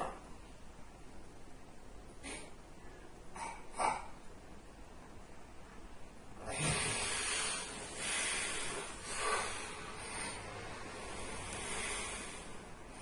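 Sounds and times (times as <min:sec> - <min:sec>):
person snoring: 0:06.4 - 0:12.8.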